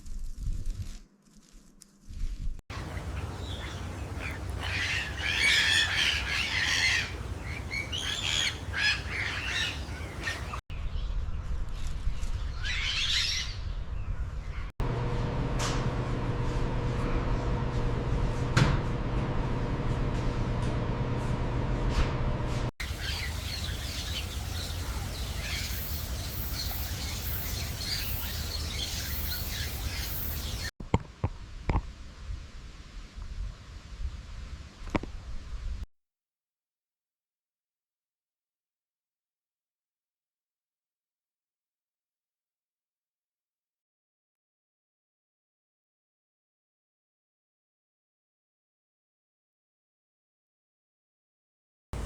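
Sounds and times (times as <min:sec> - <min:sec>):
birds squawking: 0:02.7 - 0:10.6, 0:22.8 - 0:30.7.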